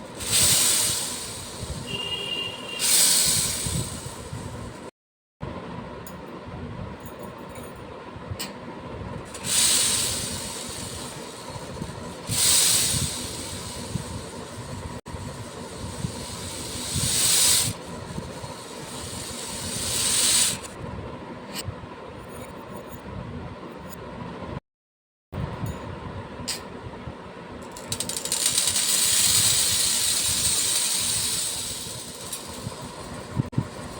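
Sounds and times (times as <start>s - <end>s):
small beads pouring: 0.0s - 4.6s, 9.3s - 14.6s, 15.4s - 20.7s, 27.7s - 33.9s.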